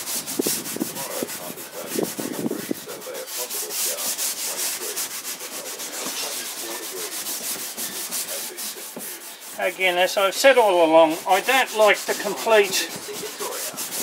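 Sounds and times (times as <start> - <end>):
steel wool rubbing on wood: 0.0 - 14.0.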